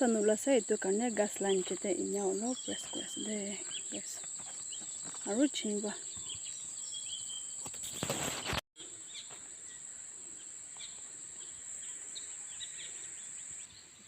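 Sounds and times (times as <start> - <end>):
insects droning: 0.0 - 14.0
faint bird chirps: 1.9 - 14.0
rustling: 7.6 - 8.6.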